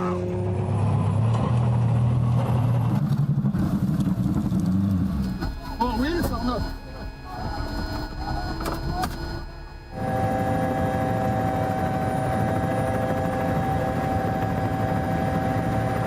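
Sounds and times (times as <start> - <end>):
loud steady engine drone: 0.0 - 16.0.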